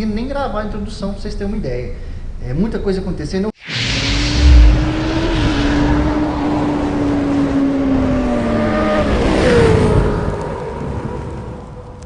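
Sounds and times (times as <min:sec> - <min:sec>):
engine running at high revs: 0:03.7 - 0:10.8.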